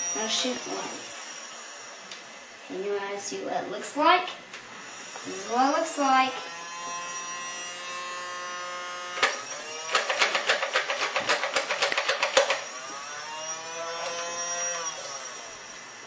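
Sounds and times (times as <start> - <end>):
small toy motor whirring: 0.0 - 2.2, 3.9 - 16.0
fast clatter of clicks: 9.9 - 12.6.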